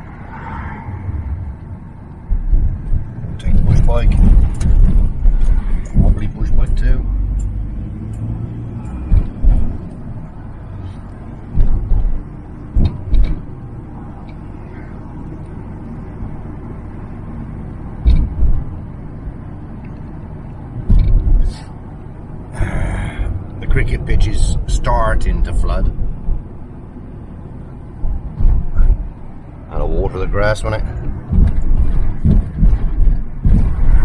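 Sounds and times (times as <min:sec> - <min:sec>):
van engine and road rumble: 0:00.0 - 0:34.0
loud thumps over bumps: 0:02.2 - 0:07.0, 0:09.0 - 0:10.4, 0:11.4 - 0:13.5, 0:18.0 - 0:18.8, 0:20.8 - 0:21.5, 0:27.9 - 0:34.0.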